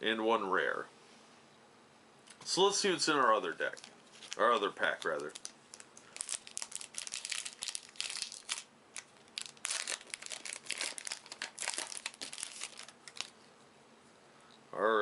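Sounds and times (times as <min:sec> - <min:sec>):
wrapper being torn open: 0:03.6 - 0:13.4
wrapper crinkling and crackling: 0:03.6 - 0:13.4.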